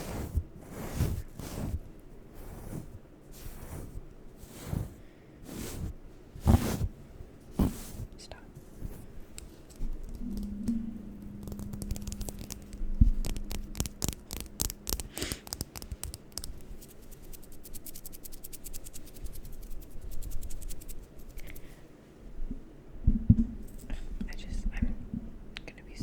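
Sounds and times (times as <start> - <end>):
low steady hum: 0.0 - 26.0
tapping and scratching: 9.7 - 19.8.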